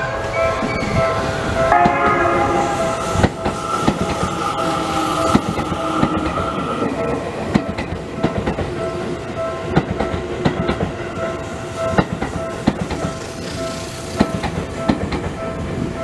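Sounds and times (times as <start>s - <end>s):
electric train passing: 0.0s - 16.0s
wheels clicking over rail joints: 0.0s - 16.0s.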